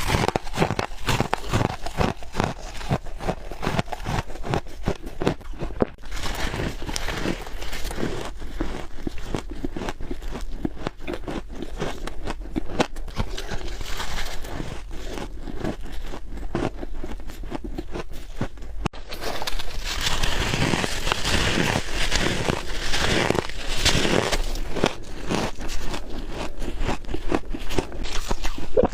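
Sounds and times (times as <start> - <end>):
chewing crunchy frost: 0.0 - 28.9.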